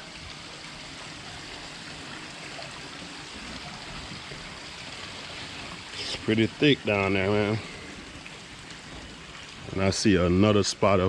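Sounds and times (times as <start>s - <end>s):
steady even hiss: 3.3s - 11.0s.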